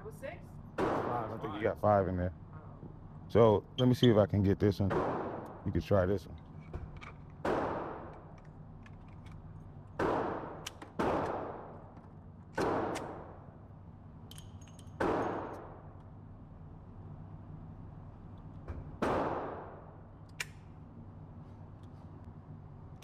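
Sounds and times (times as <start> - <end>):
handgun shots with echo: 4.9 - 5.6, 7.4 - 8.2, 10.0 - 11.8, 12.6 - 13.4, 15.0 - 15.8, 19.0 - 19.8.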